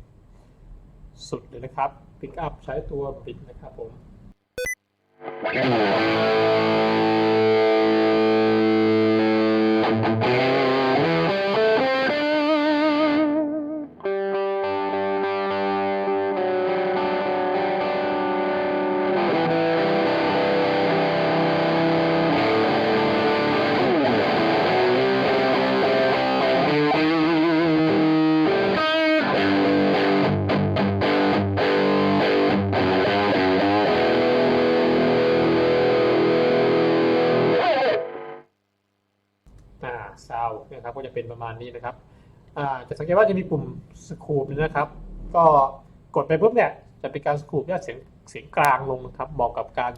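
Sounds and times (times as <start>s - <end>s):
distorted electric guitar: 4.6s - 38.5s.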